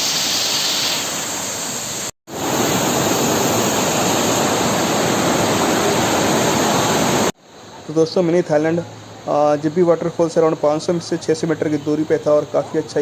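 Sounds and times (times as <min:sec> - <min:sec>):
waterfall rushing: 0:00.0 - 0:07.9.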